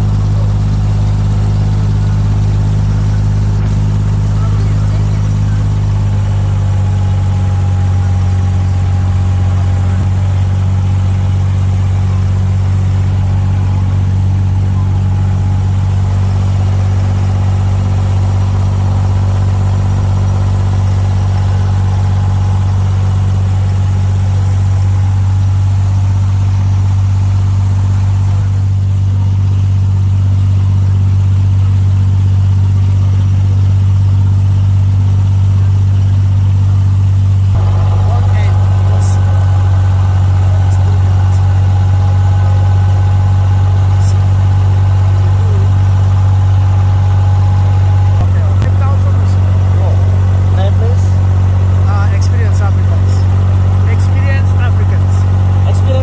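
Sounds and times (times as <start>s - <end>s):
boat diesel engine humming: 0.0s - 56.0s.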